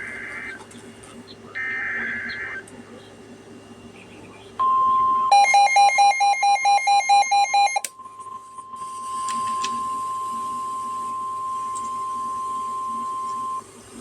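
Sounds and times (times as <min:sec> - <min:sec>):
rapid electronic beeping: 0:01.3 - 0:02.6
steady warning alarm tone: 0:01.6 - 0:02.6, 0:04.6 - 0:13.7.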